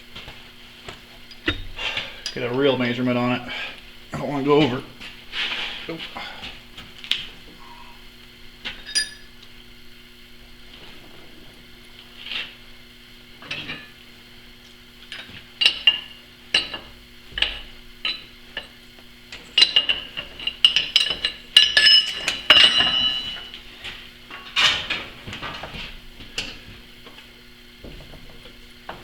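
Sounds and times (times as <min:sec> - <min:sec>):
faint steady hum: 0:00.0 - 0:29.0
metal tools clinking and clanking: 0:08.7 - 0:09.4, 0:13.4 - 0:14.0, 0:15.0 - 0:26.7.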